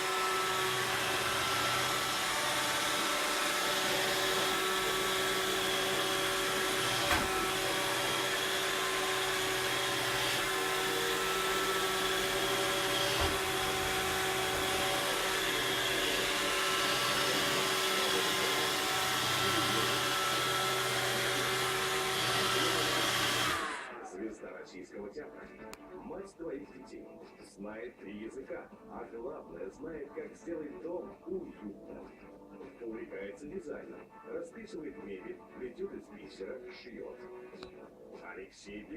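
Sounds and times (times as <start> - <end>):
robot vacuum cleaner whirring: 0.0 - 24.2.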